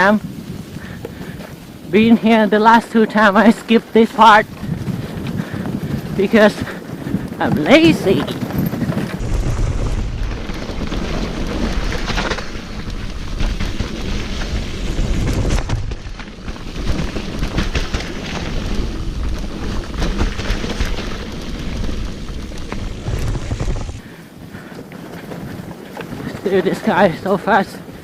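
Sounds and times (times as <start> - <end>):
bike tyre noise: 0.0 - 28.0
wind buffeting on microphone: 0.0 - 28.0
bike rattling knocks: 4.6 - 24.1.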